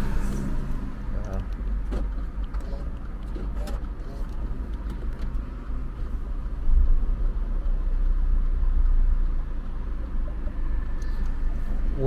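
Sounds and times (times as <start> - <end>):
car engine low rumble: 0.0 - 12.0.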